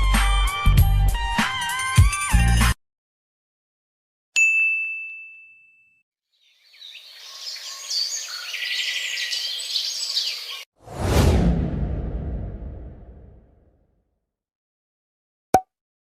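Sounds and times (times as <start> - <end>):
birds chirping: 6.4 - 10.7.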